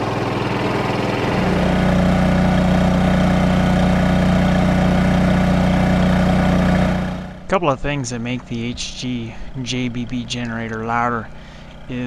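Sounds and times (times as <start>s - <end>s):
generator humming: 0.0s - 12.0s.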